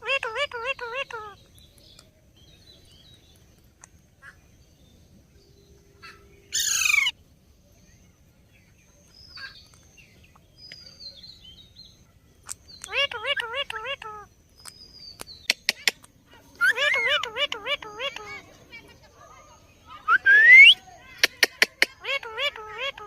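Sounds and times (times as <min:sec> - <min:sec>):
parrot harsh call: 0:06.0 - 0:07.1.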